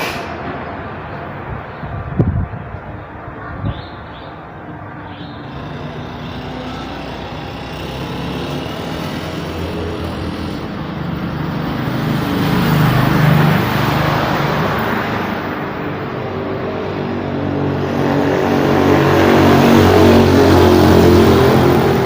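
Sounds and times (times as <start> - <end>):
road traffic: 0.0 - 22.0
vehicle passing close: 4.5 - 22.0.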